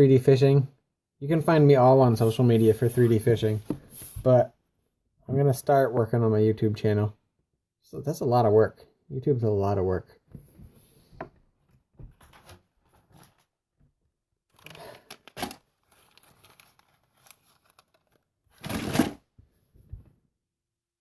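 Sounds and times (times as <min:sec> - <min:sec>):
packaging crinkling and rustling: 0:14.5 - 0:19.2
packaging tearing: 0:14.6 - 0:19.2.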